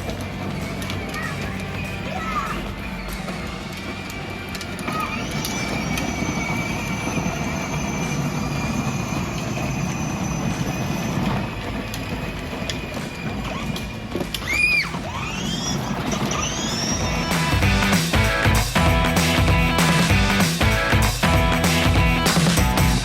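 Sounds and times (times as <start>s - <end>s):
toy truck motor whining: 0.0s - 17.6s
wheels rumbling: 0.0s - 23.0s.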